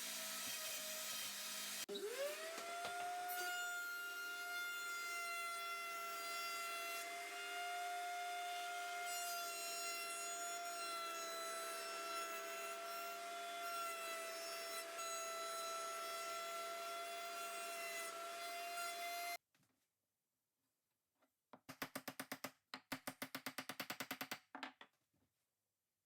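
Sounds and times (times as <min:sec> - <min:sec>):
hand router cutting wood: 0:00.0 - 0:19.4.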